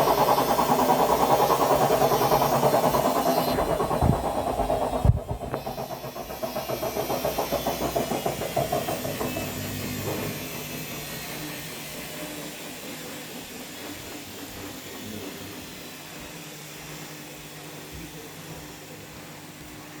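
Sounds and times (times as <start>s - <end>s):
washing machine drum pulsing: 0.0s - 15.0s.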